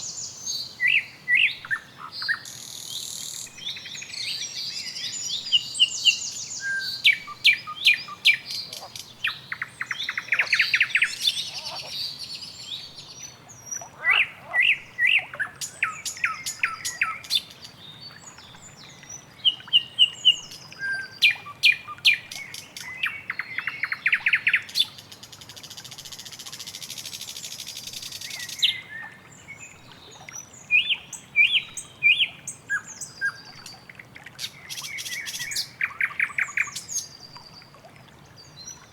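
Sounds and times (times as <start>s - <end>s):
birds chirping and trilling: 5.6s - 12.8s.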